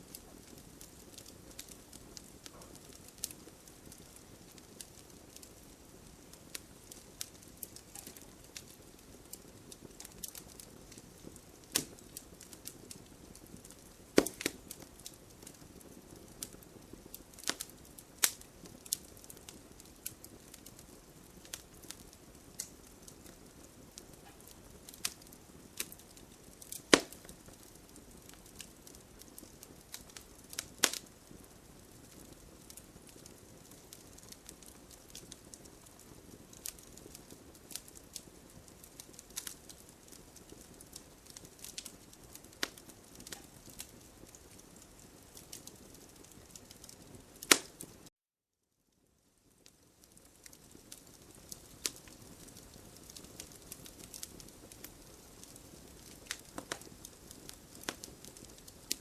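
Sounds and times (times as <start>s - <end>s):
campfire crackling and popping: 0.0s - 48.1s, 49.4s - 59.0s
fire hissing softly: 0.0s - 48.1s, 48.7s - 59.0s
loud wood snaps: 14.2s - 14.6s, 26.9s - 27.3s, 47.4s - 47.7s.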